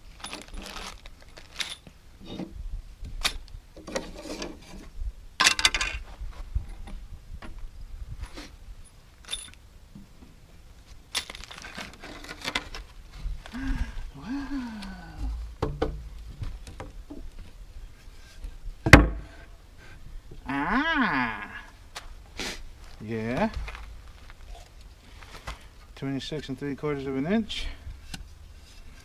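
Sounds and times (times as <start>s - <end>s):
wooden board clattering scrape: 3.8s - 4.9s
wooden boards knocking: 15.6s - 17.2s.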